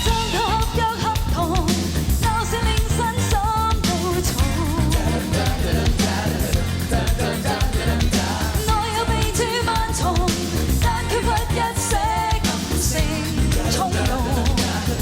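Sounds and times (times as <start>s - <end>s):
bass guitar: 0.0s - 15.0s
drums beating: 0.0s - 15.0s.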